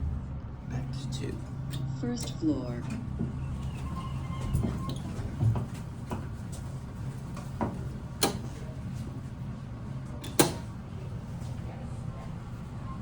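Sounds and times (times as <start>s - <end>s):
elevator low hum: 0.0s - 13.0s
elevator door mechanism clicks and knocks: 1.6s - 8.7s, 10.2s - 10.8s.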